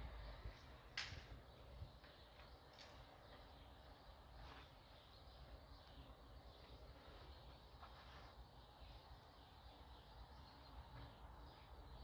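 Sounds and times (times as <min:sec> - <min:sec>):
low outdoor rumble: 0:00.0 - 0:01.5.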